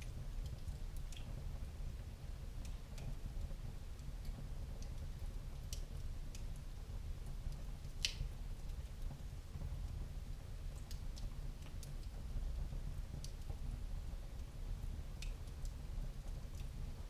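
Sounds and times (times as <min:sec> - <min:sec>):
wood fire crackling: 0:00.0 - 0:17.0.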